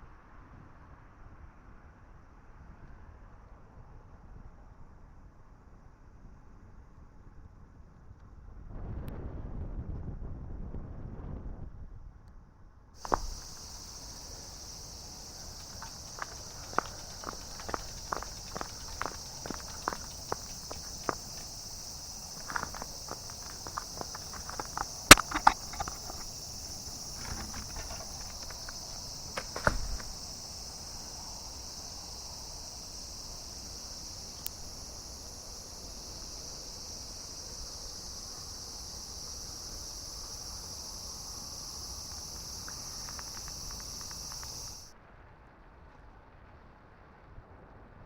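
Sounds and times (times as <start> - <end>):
sharp clicks: 13.0 - 30.2
footsteps: 13.0 - 30.6
insects chirping: 13.0 - 44.9
low thump: 27.1 - 30.2.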